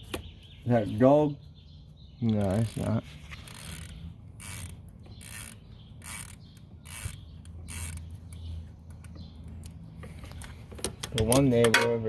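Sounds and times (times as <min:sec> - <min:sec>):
ratchet wrench clicking: 0:02.3 - 0:08.4.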